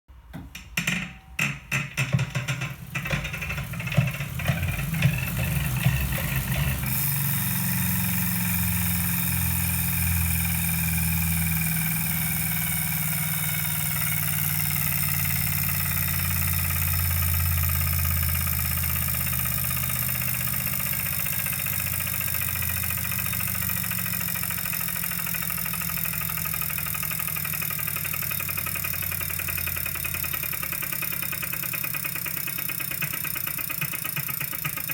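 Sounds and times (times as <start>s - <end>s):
trainer clicks and knocks: 0.3s - 6.2s.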